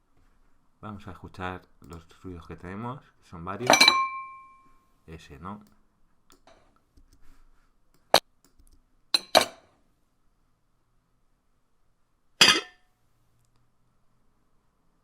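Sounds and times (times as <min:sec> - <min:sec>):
plate set down on table: 0:12.4 - 0:12.8.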